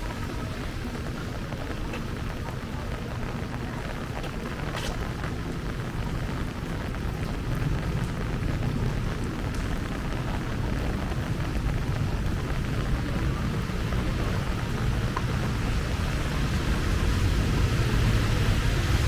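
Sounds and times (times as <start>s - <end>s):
heavy rain falling: 0.0s - 19.0s.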